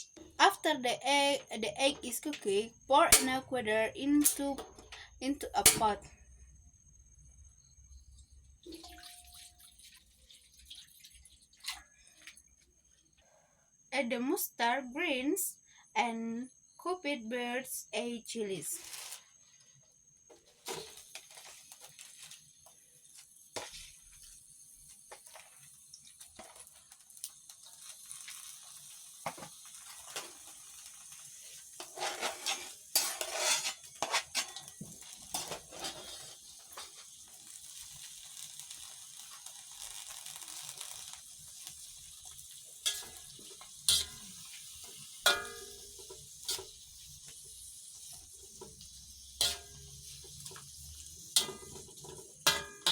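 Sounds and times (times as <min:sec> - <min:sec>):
faint sizzling in a pot: 0:00.0 - 0:52.9
utensil clinking and scraping a pot: 0:20.3 - 0:52.9.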